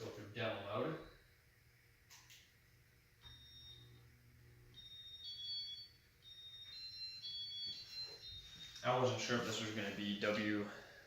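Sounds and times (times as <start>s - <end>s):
high electronic beeping tones: 4.8s - 8.8s.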